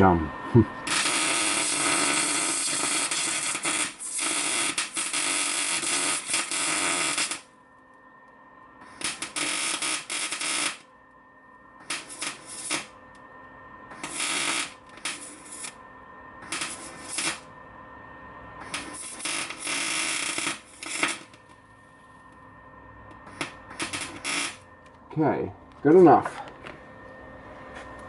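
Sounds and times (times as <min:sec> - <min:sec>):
welder arc crackling: 0:00.8 - 0:07.5, 0:08.8 - 0:10.9, 0:11.8 - 0:13.2, 0:13.9 - 0:15.8, 0:16.4 - 0:17.5, 0:18.6 - 0:21.6, 0:23.1 - 0:25.0.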